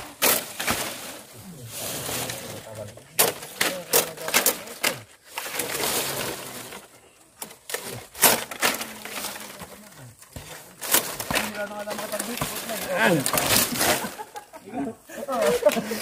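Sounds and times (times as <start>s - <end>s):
palm leaflets snapping: 0.0s - 1.2s, 3.2s - 6.8s, 7.4s - 14.4s
stiff leaves rustling: 0.0s - 16.0s.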